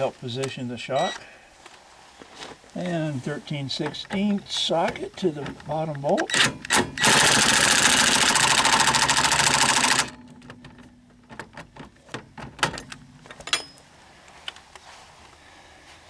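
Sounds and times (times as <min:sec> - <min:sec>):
impact wrench running: 0:06.3 - 0:10.6
light clicks and clinks: 0:13.2 - 0:15.4.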